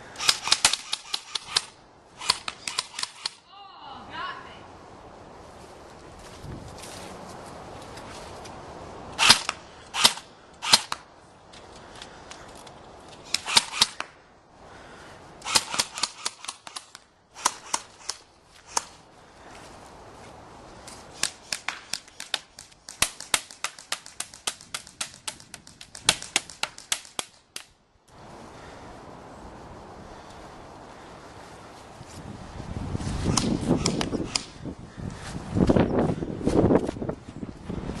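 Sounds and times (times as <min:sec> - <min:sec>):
airsoft rifles firing: 0:00.1 - 0:03.4, 0:09.2 - 0:11.0, 0:13.3 - 0:14.1, 0:15.4 - 0:19.0.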